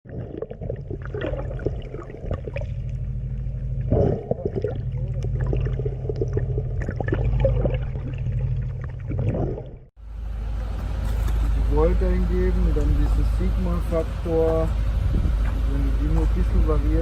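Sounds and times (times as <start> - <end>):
water splashing against hull: 0.0 - 9.9
low engine hum: 0.1 - 17.0.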